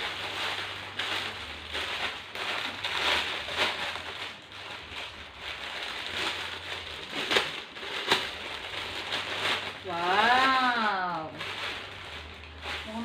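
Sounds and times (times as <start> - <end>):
plastic packaging rustling: 0.0 - 13.0.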